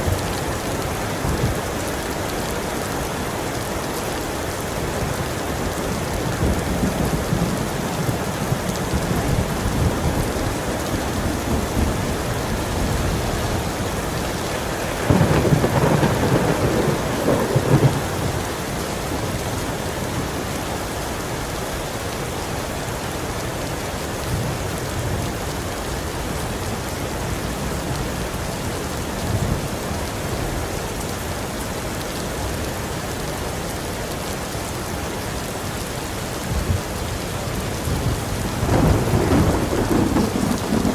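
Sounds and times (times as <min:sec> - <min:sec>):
heavy rain falling: 0:00.0 - 0:40.9
thunder crack and rumble: 0:06.3 - 0:18.6, 0:37.8 - 0:40.9.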